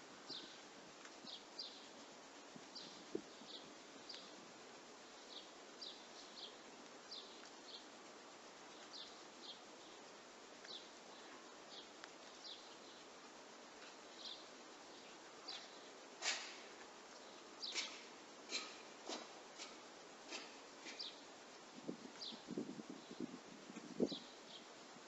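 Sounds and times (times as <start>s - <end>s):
faint steady hiss: 0.0s - 25.0s
bird chirping: 14.1s - 16.5s, 17.2s - 18.8s.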